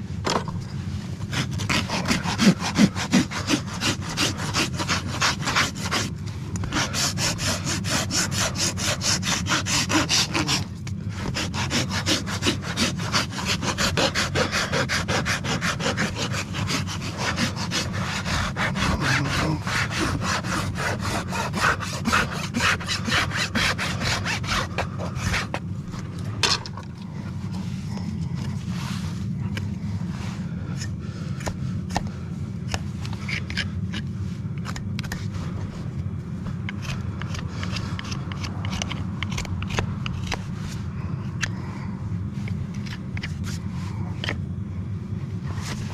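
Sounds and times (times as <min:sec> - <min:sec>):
rasp filing a hoof: 0:01.2 - 0:25.6, 0:30.7 - 0:32.1, 0:32.7 - 0:35.8, 0:36.6 - 0:41.6, 0:42.7 - 0:44.4.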